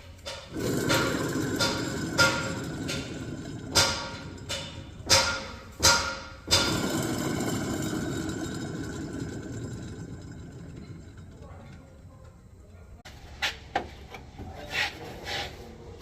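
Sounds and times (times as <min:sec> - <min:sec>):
compressor running roughly: 0:00.0 - 0:13.0
sharp mechanical knocks: 0:00.2 - 0:09.2.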